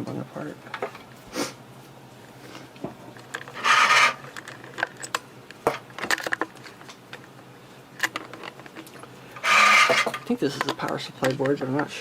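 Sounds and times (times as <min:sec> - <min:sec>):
rubbing scrape on circuit board: 0:03.6 - 0:04.2, 0:09.4 - 0:10.1.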